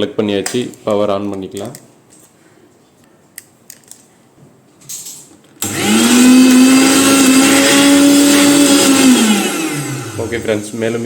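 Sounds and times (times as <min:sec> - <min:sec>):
mixer grinder motor whining: 0:05.6 - 0:11.0.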